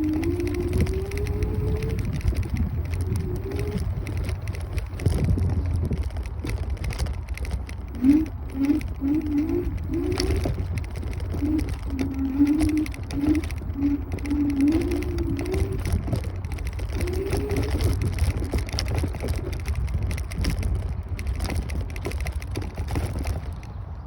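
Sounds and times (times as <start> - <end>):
rattles and clicks: 0.0 - 24.0
scooter road noise: 0.0 - 24.0
wind on microphone: 0.0 - 24.0
wavering mid-pitched tone: 7.9 - 17.9.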